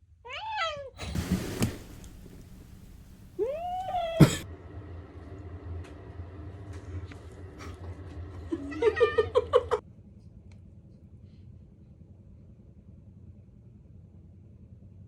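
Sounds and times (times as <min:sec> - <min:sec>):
low steady hum: 0:01.0 - 0:04.4
quiet hiss: 0:01.0 - 0:04.4.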